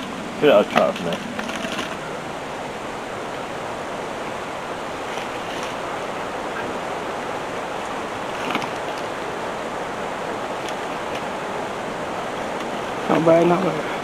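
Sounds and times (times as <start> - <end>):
outdoor rushing noise: 0.0 - 14.0.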